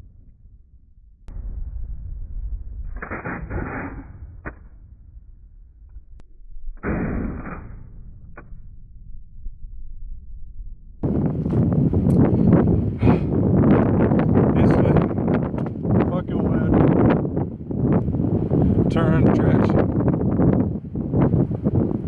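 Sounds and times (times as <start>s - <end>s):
slowed rifle shots booming: 1.3s - 9.2s.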